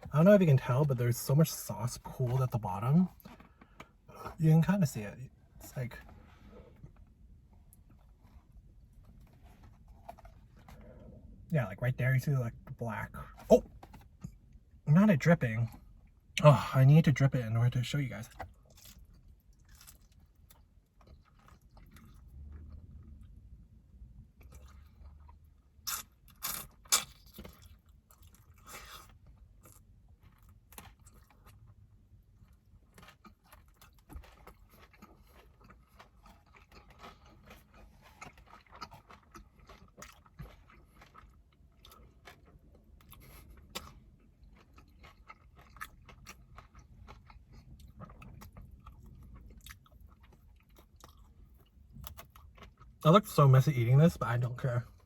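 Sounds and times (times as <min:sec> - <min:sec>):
person chewing crunchy food: 0:05.3 - 0:11.5, 0:18.2 - 0:53.0.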